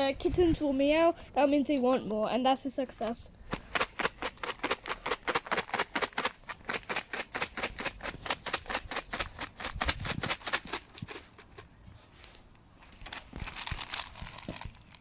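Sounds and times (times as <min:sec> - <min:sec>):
cat treats rattling in plastic tub: 0:03.6 - 0:11.7, 0:12.9 - 0:15.0.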